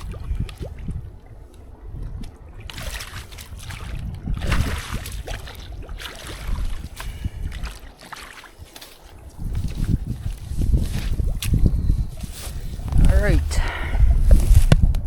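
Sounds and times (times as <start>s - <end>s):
water splashing and sloshing: 0.0s - 15.0s.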